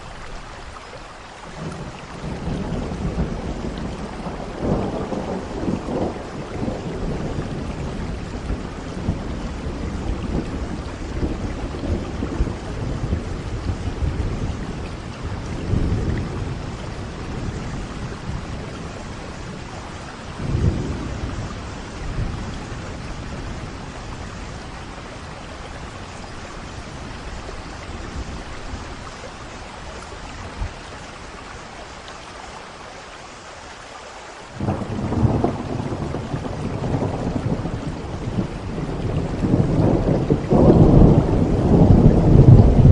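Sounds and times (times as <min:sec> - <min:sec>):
steady rain: 0:00.0 - 0:42.9
loud thunderclap: 0:01.6 - 0:19.6, 0:20.4 - 0:24.1, 0:34.6 - 0:42.9
thunder rumbling: 0:01.6 - 0:31.6, 0:34.6 - 0:42.9.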